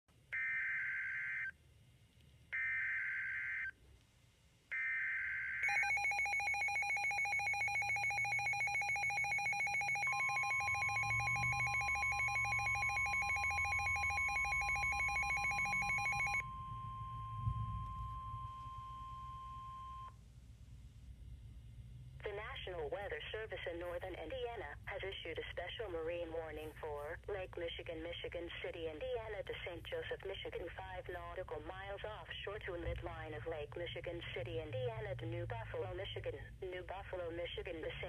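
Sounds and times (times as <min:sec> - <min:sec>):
steady single-pitch alert tone: 0:04.8 - 0:20.1.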